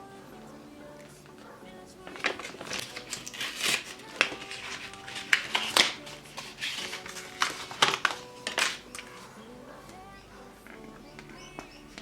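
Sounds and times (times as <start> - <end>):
soft background music: 0.0 - 12.0
packaging rustling: 0.9 - 9.4.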